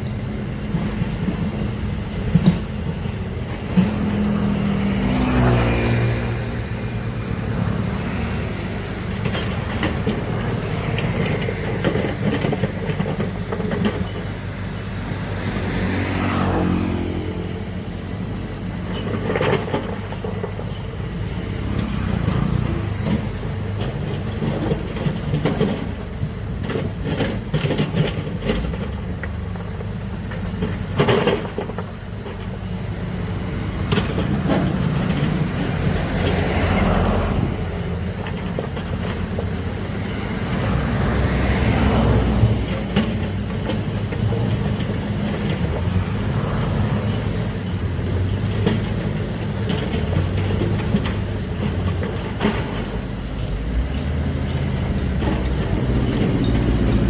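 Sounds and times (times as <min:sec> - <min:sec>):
diesel machinery running: 0:00.0 - 0:57.0
metallic clanks and knocks: 0:06.3 - 0:57.0.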